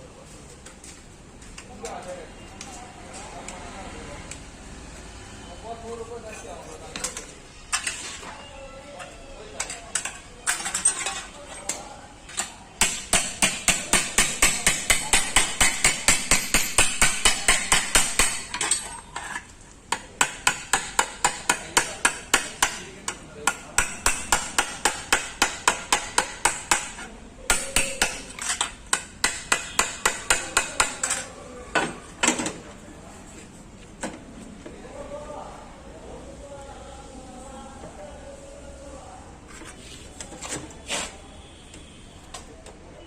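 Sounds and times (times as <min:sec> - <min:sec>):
hammer striking metal panel: 0:12.8 - 0:18.5, 0:28.9 - 0:31.1.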